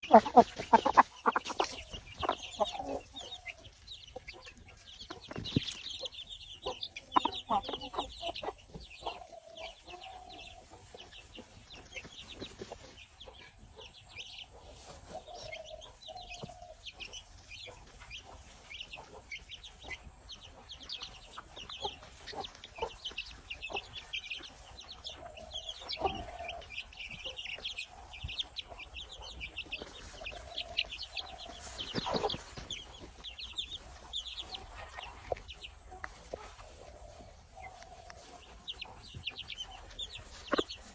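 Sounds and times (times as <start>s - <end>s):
chicken calling: 0.0s - 3.7s
baby chicks peeping: 0.0s - 40.9s.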